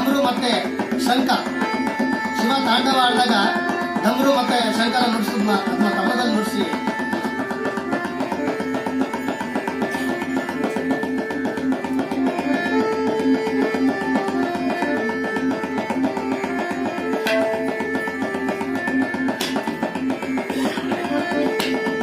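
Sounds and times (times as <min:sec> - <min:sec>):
tabla drumming: 0:00.0 - 0:22.0
repeating melody of held notes: 0:17.2 - 0:18.5.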